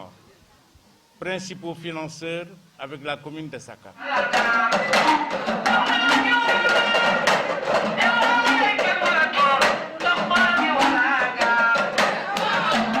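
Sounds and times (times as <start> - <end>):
drum beat: 4.0 - 13.0
person singing: 4.0 - 13.0.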